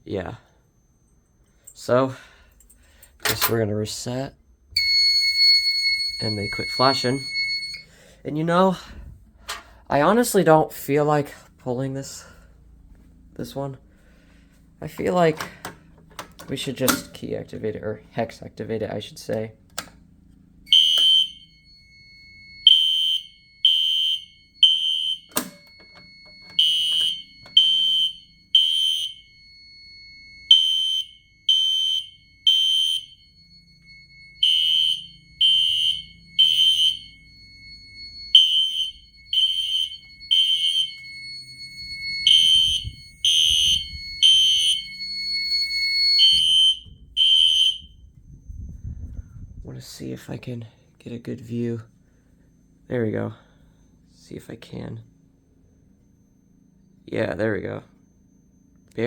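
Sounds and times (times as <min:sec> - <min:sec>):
fire alarm horn blasts: 0:04.7 - 0:08.2, 0:20.6 - 0:49.0
thin steady high tone: 0:04.8 - 0:08.0, 0:33.0 - 0:46.9.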